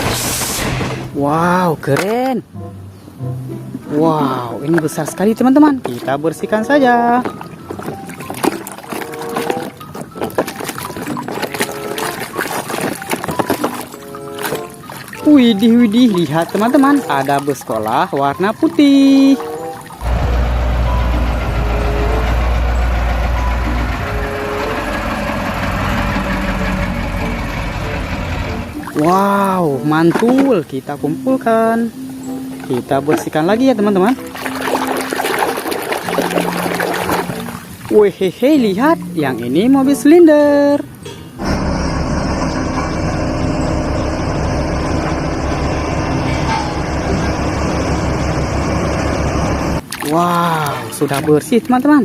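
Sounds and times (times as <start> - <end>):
hiss of water spray: 0.0 - 1.0
low hum: 20.0 - 28.8, 41.4 - 49.8
machine running noise: 20.0 - 28.8, 41.4 - 49.8.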